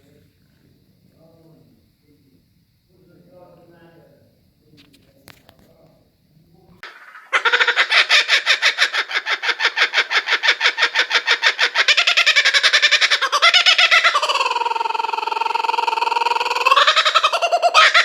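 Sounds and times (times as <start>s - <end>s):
kookaburra call: 6.8s - 18.0s.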